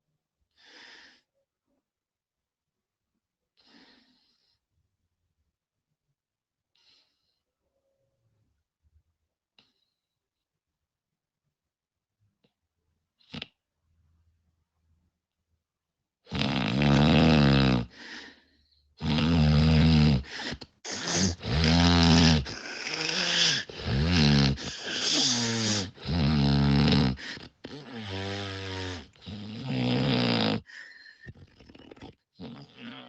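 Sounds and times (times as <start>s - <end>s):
woman snoring loudly: 16.3s - 18.0s, 19.0s - 33.0s.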